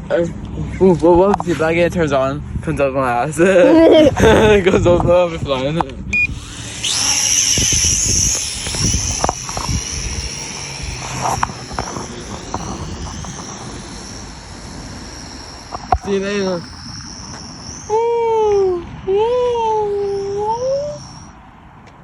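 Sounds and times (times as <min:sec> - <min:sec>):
wind rumble on microphone: 0:02.4 - 0:21.4
drone propellers whining: 0:06.0 - 0:21.7.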